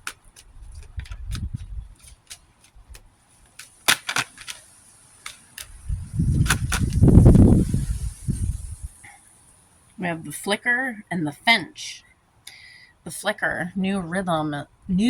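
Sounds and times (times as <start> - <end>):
cards clicking and tapping: 0.0 - 5.7
card snaps: 0.0 - 5.8, 6.4 - 7.0
handling noise on microphone: 0.0 - 9.0.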